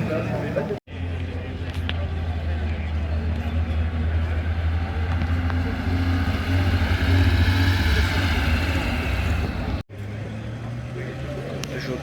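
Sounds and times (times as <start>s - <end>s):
low engine hum: 0.0s - 12.0s
car driving past: 2.9s - 12.0s.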